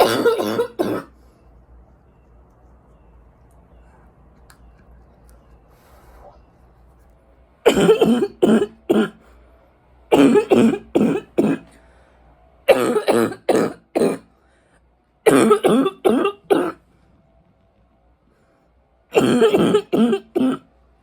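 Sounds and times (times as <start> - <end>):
woman coughing: 0.0 - 1.1, 7.7 - 9.2, 10.1 - 11.7, 12.7 - 14.3, 15.3 - 16.8, 19.1 - 20.7.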